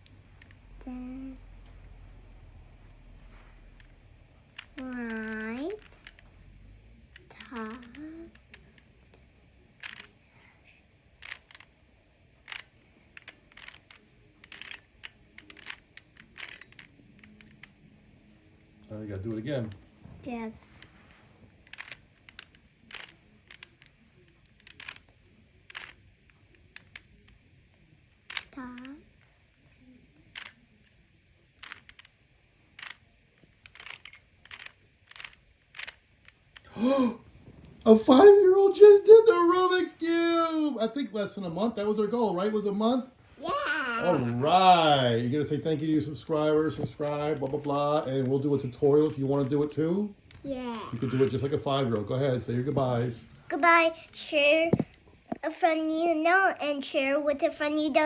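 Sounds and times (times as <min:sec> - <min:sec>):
puzzle cube plastic clicking: 0:03.7 - 0:06.3, 0:07.1 - 0:08.9, 0:09.8 - 0:10.2, 0:11.2 - 0:11.7, 0:12.4 - 0:17.9, 0:20.6 - 0:29.3, 0:30.2 - 0:36.7, 0:44.0 - 0:52.1.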